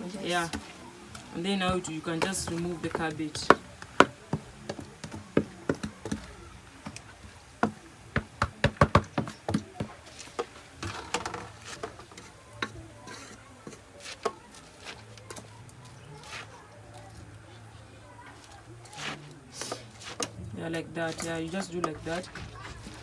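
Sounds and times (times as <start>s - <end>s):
utensil scraping cooking pot: 0.2s - 15.6s, 18.3s - 23.0s.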